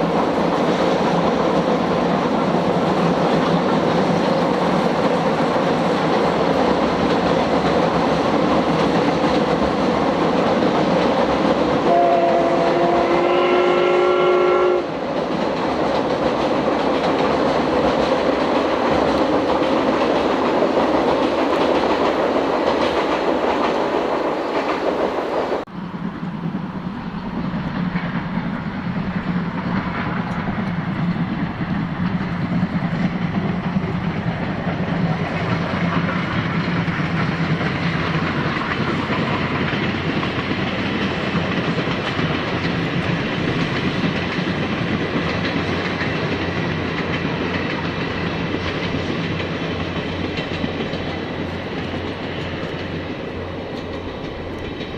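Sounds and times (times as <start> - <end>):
steam locomotive passing: 0.0 - 54.9
steam whistle chord: 11.8 - 14.9.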